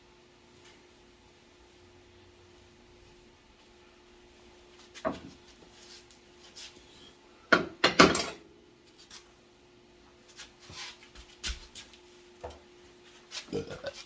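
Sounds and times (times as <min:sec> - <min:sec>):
faint steady hum: 0:00.0 - 0:14.0
metal objects clanking: 0:07.9 - 0:08.4.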